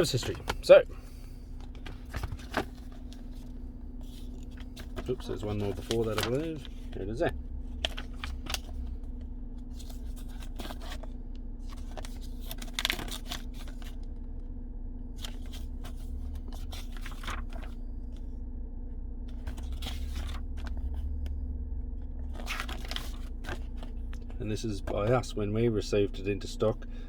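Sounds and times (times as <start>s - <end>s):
paper pages rustling: 0.0s - 14.1s, 15.2s - 17.8s, 19.3s - 21.1s, 22.3s - 25.2s
car engine idling: 0.0s - 27.0s.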